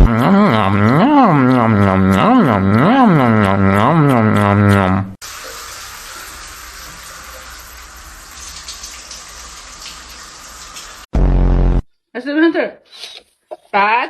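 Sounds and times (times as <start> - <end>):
hissing rush of water: 5.2 - 11.1.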